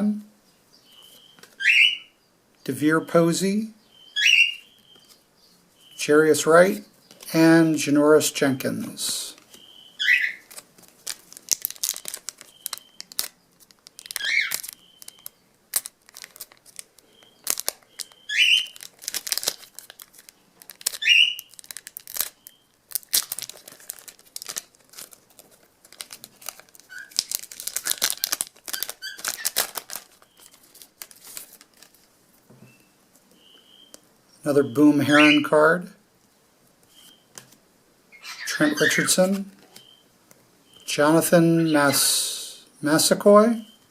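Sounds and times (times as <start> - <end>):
high chirps: 9.5 - 10.5, 11.8 - 13.3, 14.0 - 15.4, 17.0 - 18.9, 20.9 - 21.6, 32.7 - 35.6
wrappers tearing and crinkling: 10.4 - 32.1.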